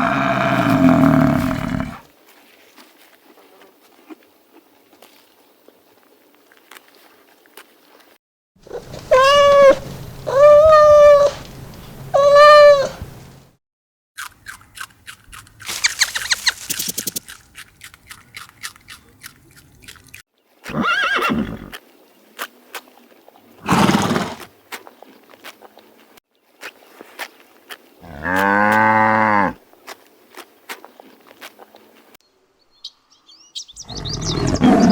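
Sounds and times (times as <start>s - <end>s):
animal calls: 0.0s - 2.0s, 8.7s - 11.4s, 15.7s - 17.3s
rapid pulsing call with clicks: 15.6s - 18.6s.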